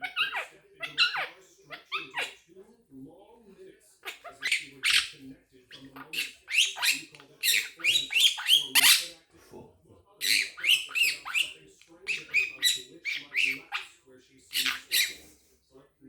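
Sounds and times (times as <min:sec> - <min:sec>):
parrot squawking and chirping: 0:00.0 - 0:02.5, 0:04.0 - 0:09.2, 0:10.2 - 0:15.3.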